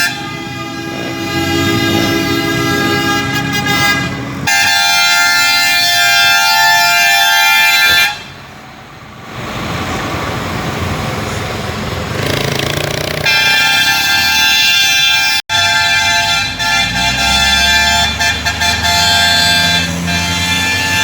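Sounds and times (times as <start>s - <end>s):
truck air horn chord: 0.0s - 8.4s, 13.3s - 21.0s
road noise: 0.0s - 21.0s
truck engine: 0.0s - 21.0s.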